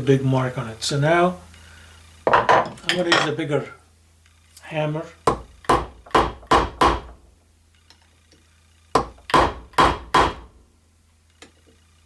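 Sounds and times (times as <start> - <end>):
hammer striking rivet: 5.3 - 7.2, 8.9 - 10.5.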